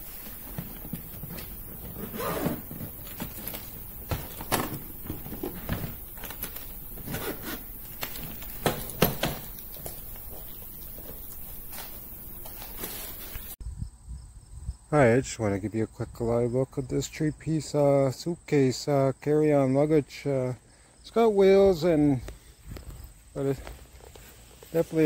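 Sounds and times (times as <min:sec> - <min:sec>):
suitcase scraping and rustling: 0:00.0 - 0:13.6
suitcase knocks and clicks: 0:00.1 - 0:11.3.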